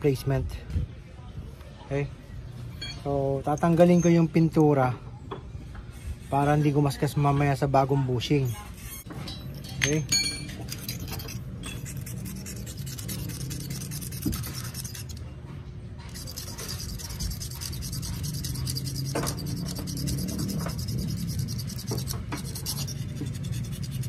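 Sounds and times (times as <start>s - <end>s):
metal pin being scraped: 8.4s - 15.4s, 16.1s - 24.0s.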